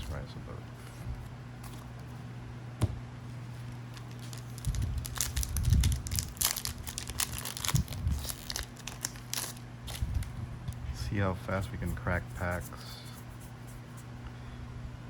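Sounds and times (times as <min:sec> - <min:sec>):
foil wrapper tearing and crinkling: 0:03.7 - 0:10.3.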